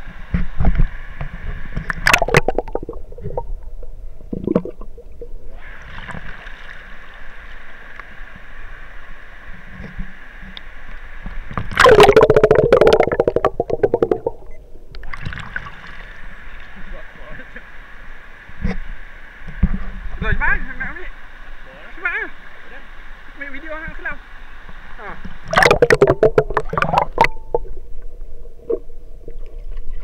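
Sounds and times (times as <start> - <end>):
water splashing: 1.8 - 6.9, 11.6 - 16.2, 25.4 - 30.0.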